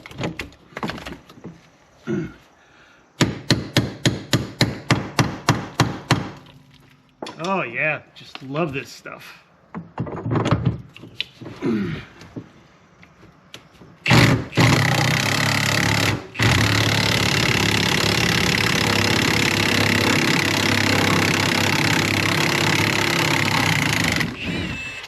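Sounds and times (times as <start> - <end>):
power tool running: 14.1 - 25.0.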